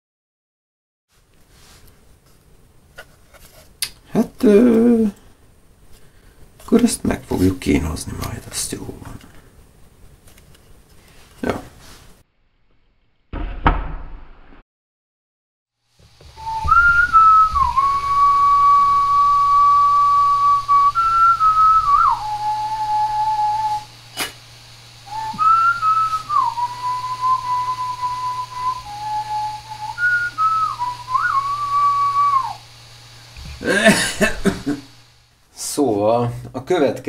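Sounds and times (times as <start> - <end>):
person whistling a slow tune: 16.4 - 23.9, 25.0 - 32.7.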